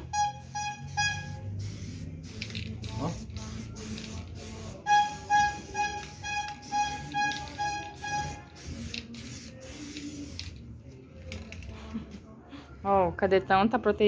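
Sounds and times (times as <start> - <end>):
background music: 0.0 - 14.0
aerosol spray can hissing: 0.4 - 10.6.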